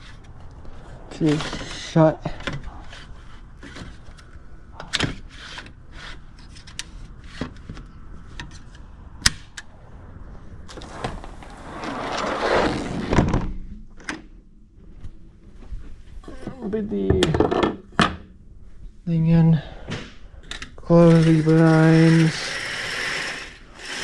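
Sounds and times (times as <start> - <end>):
glass door sliding shut: 10.7 - 13.6.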